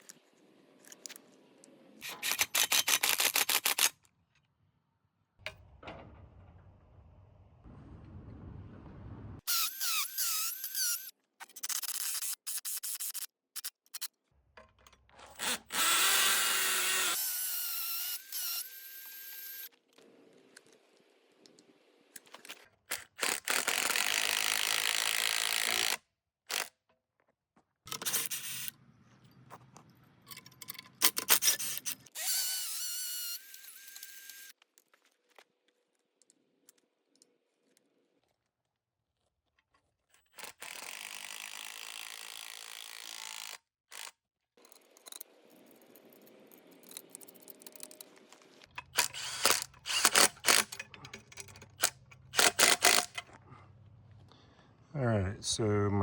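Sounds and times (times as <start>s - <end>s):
power drill motor whine: 15.4s - 19.7s, 31.5s - 34.5s, 48.9s - 50.7s.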